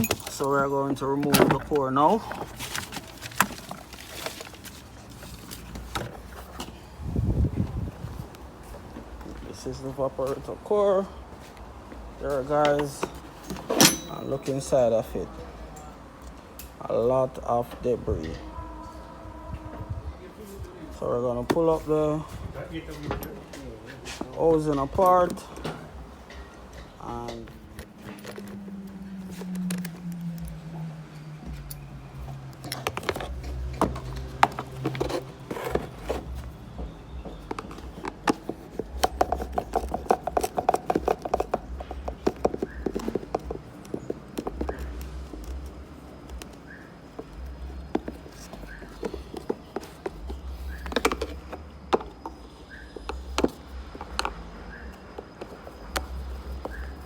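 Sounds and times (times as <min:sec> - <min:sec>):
plastic clicks knocks and scrapes: 0:31.7 - 0:52.4.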